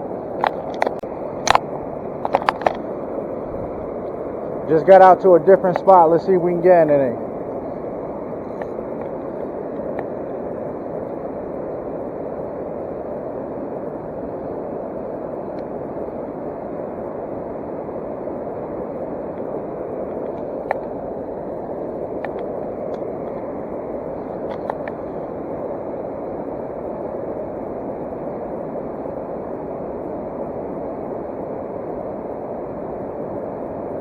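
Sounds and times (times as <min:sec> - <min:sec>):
flowing stream water: 0:00.4 - 0:04.6.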